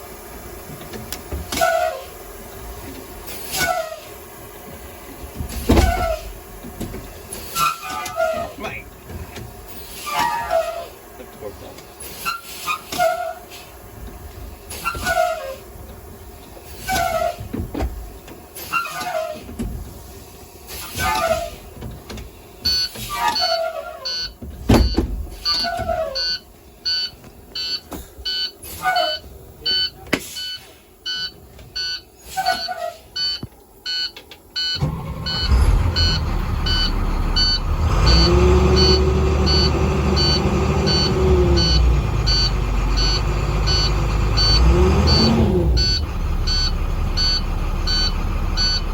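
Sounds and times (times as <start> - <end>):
diesel engine starting and running: 0.0 - 48.9
bus brakes squealing: 1.5 - 2.2, 3.2 - 4.2, 5.5 - 6.4, 7.3 - 8.8, 9.7 - 11.0, 12.0 - 13.8, 14.7 - 15.7, 16.6 - 17.5, 18.6 - 21.8, 22.6 - 48.9
dash warning beeps: 22.6 - 48.9.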